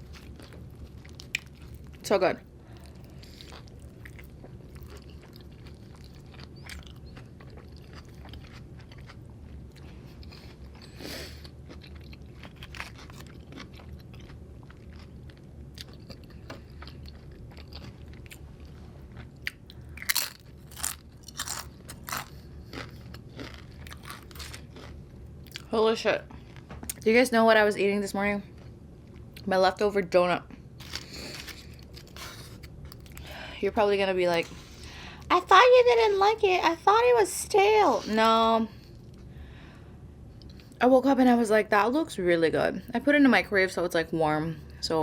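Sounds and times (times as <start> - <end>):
chewing and biting food: 0.0 - 2.0, 2.8 - 25.7.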